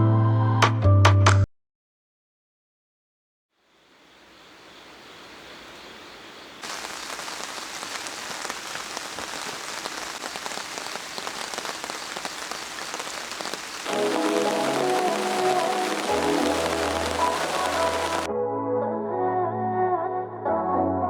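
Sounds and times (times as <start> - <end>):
rain pattering: 3.9 - 18.3.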